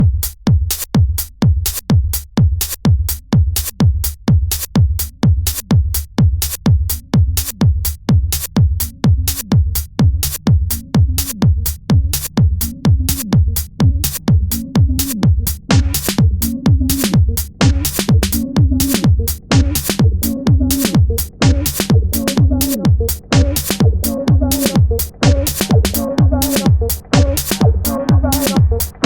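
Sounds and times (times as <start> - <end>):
electronic dance music: 10.2 - 29.0.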